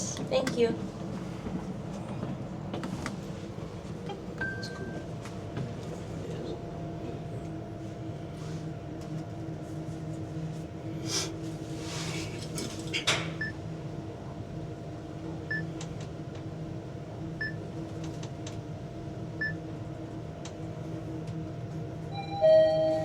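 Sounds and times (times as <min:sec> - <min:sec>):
elevator machinery hum: 0:00.0 - 0:23.0
elevator arrival chime: 0:04.4 - 0:05.1, 0:22.1 - 0:23.0.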